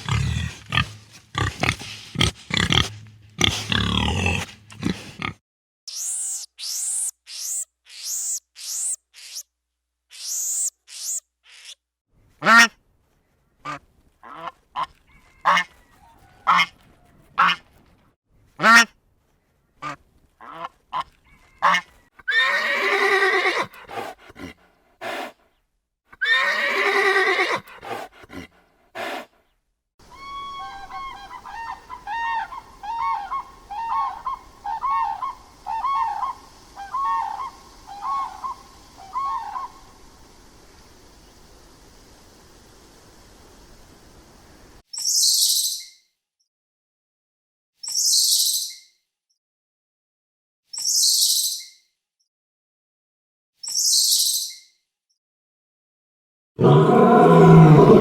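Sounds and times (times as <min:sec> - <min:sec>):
animal grunts: 0:00.0 - 0:05.4, 0:56.6 - 0:58.0
high animal chirps: 0:05.9 - 0:09.5, 0:10.1 - 0:11.8
long wavering animal calls: 0:30.0 - 0:40.0, 0:56.6 - 0:58.0.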